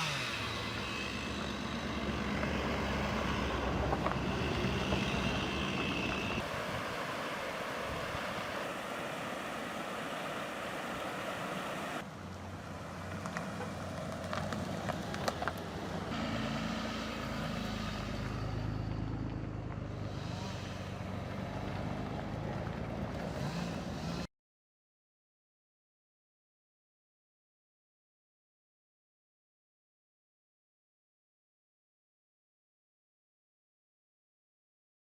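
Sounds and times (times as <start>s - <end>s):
motor vehicle engine running: 0.0s - 24.3s
wind-like rushing noise: 2.7s - 12.1s.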